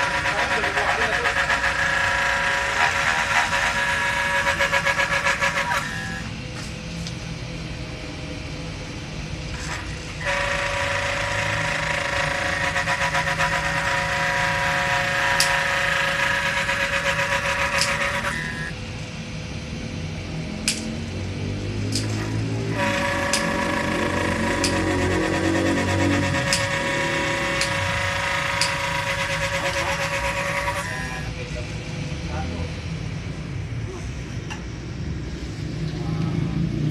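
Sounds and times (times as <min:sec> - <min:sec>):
rotary tool whining: 0:00.0 - 0:07.2, 0:09.4 - 0:19.1, 0:21.8 - 0:31.6.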